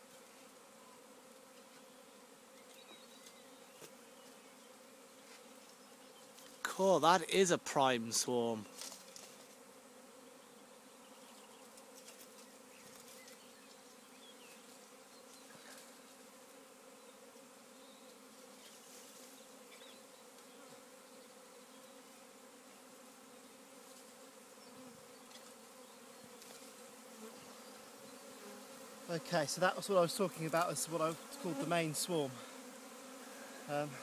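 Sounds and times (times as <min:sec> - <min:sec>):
bee swarm buzzing: 0:00.0 - 0:34.0.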